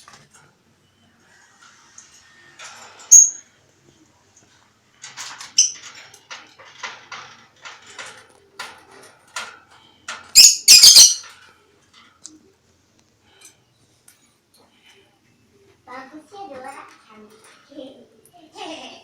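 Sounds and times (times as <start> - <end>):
lovebird harsh chirps: 10.4 - 11.2.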